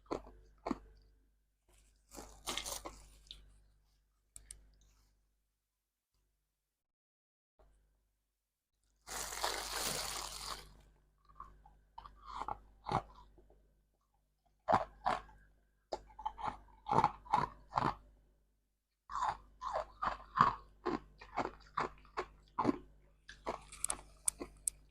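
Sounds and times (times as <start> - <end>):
ice crunching being chewed: 0.0 - 1.0, 1.7 - 3.5, 9.1 - 13.4, 14.7 - 18.0, 19.1 - 24.9.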